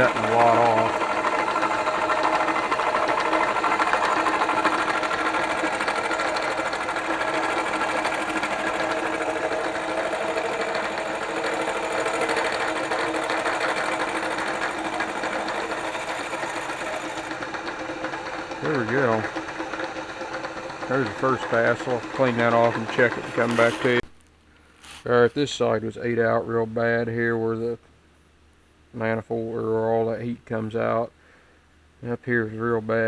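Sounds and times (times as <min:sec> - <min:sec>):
milling machine cutting metal: 0:00.0 - 0:24.0.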